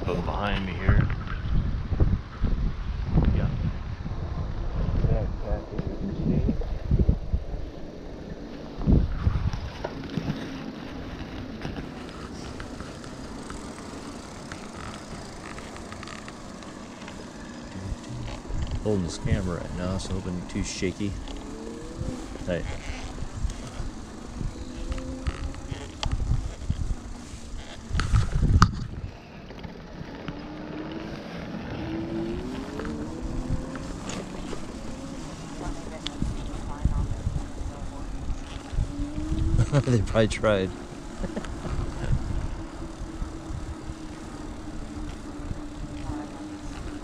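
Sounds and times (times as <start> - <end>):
wind on microphone: 0.0 - 13.5, 17.4 - 47.0
tyre hum: 7.9 - 47.0
electric motor whining: 8.4 - 47.0.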